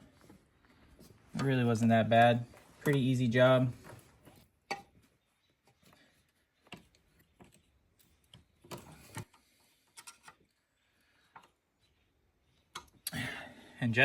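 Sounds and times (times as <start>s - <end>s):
faint clicks and taps: 11.3s - 11.6s.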